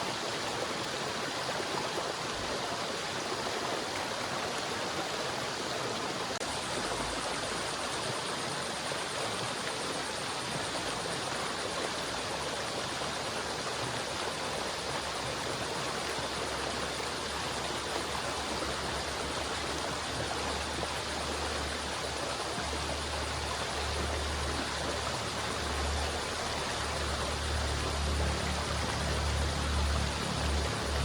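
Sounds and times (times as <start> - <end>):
river flowing: 0.0 - 31.0.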